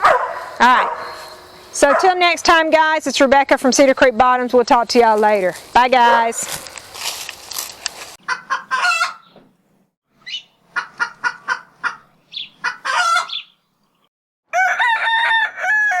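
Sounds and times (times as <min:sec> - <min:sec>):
chickens clucking: 0:08.2 - 0:09.3, 0:10.6 - 0:13.6
rooster crowing: 0:14.5 - 0:16.0.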